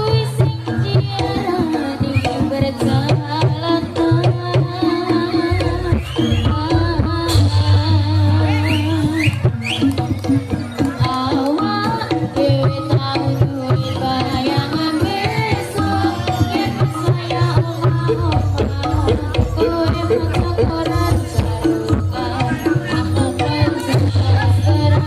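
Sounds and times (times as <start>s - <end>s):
hand drums beating: 0.0s - 25.0s
wavering bending melody: 12.8s - 25.0s.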